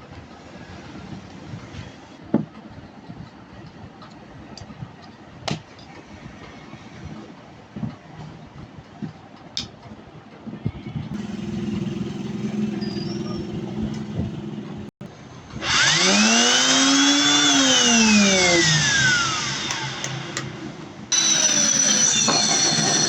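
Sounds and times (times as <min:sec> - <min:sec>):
electric drill motor whining: 0:11.2 - 0:14.8, 0:15.6 - 0:23.0
low hum: 0:11.2 - 0:14.9.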